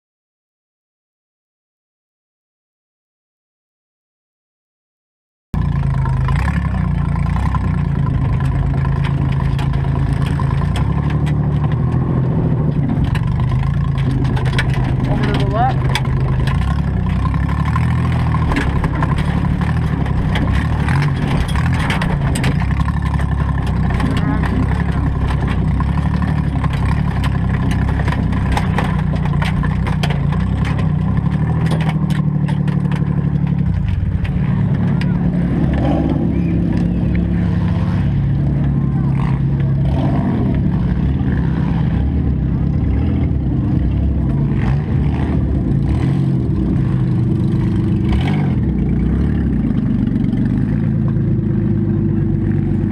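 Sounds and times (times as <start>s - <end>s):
car engine running at low speed: 5.6s - 52.9s
light rattles and ticks: 5.7s - 35.9s
sharp clicks and knocks: 5.8s - 37.3s.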